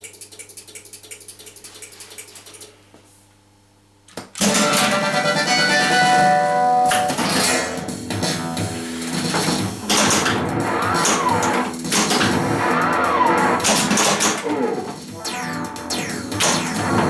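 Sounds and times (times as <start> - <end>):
loud music with held notes: 4.4 - 17.0
rhythmic plucked pattern: 4.4 - 17.0.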